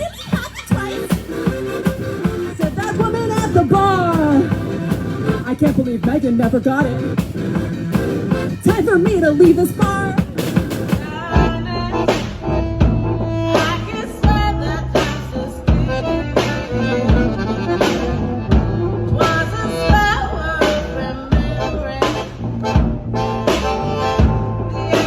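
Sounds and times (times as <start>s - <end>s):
drum hits: 0.0s - 20.2s
steady bass line: 0.0s - 25.0s
lead instrument long notes: 0.9s - 6.1s.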